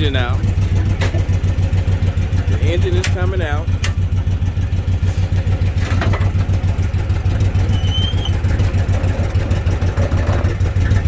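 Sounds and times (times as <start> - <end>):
engine idling: 0.0 - 11.0
brief high squeak: 7.7 - 8.4.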